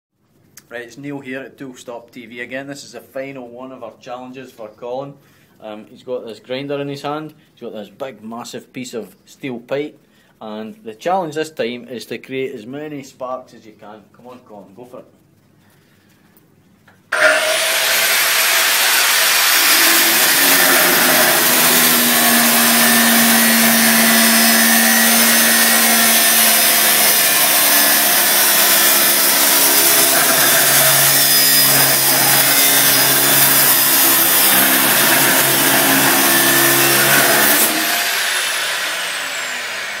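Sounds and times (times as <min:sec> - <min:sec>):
angle grinder disc whine: 0:17.1 - 0:40.0
grinder cutting steel pipe: 0:17.1 - 0:40.0.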